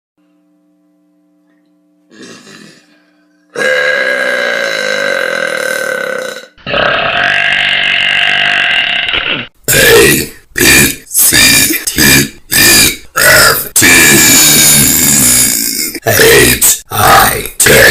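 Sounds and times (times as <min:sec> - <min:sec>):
girls burping loudly: 0:03.6 - 0:11.0.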